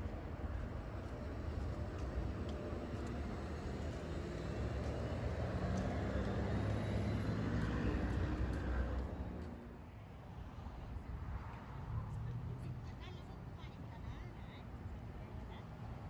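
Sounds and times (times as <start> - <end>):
large road vehicle rumbling: 0.0 - 9.8.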